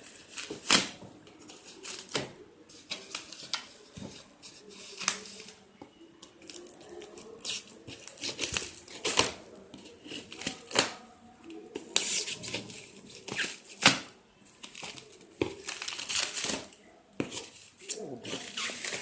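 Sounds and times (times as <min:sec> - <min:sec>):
cardboard ripping and crinkling: 0:14.6 - 0:19.0.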